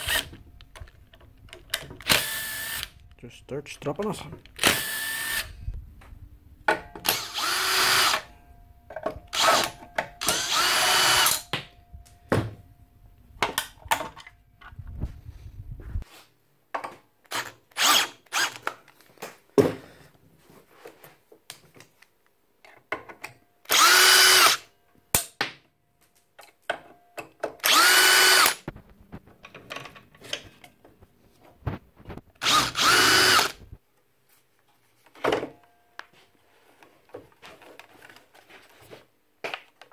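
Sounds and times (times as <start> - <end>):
power drill whining: 0.0 - 0.3, 2.0 - 2.9, 4.6 - 5.5, 7.0 - 8.3, 9.3 - 11.4, 17.4 - 18.6, 23.7 - 24.6, 27.6 - 28.7, 32.4 - 33.7
clicks and knocks of parts: 28.6 - 31.0.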